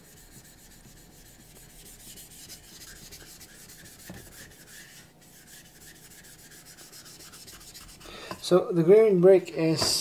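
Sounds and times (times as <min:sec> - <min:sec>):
stone scrubbing on wet whetstone: 0:00.0 - 0:08.0.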